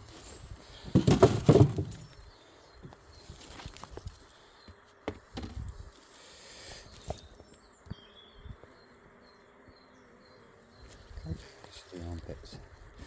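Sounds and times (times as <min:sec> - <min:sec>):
honeybees buzzing: 0:00.0 - 0:13.0
light knocks of wooden hive parts: 0:00.8 - 0:06.0.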